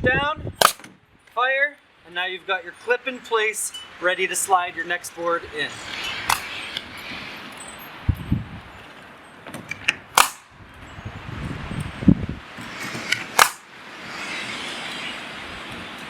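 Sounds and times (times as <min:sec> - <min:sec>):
pneumatic nail gun shots: 0:00.6 - 0:00.9, 0:06.3 - 0:06.6, 0:10.2 - 0:10.5, 0:12.9 - 0:13.7.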